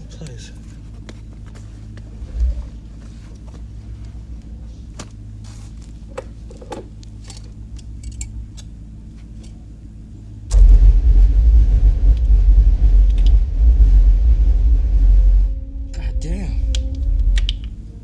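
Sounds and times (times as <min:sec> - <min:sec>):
thump: 0:10.5 - 0:15.8.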